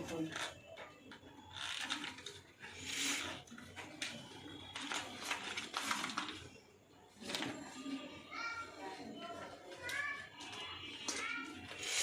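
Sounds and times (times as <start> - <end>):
packaging rustling and scraping: 0.1 - 6.6.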